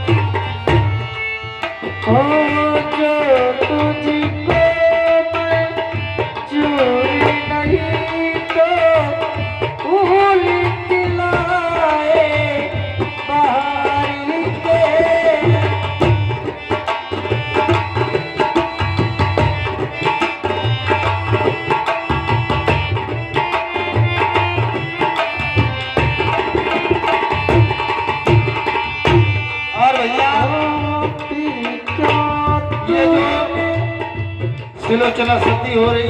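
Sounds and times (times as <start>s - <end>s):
hand drums steady beat: 15.4s - 29.4s.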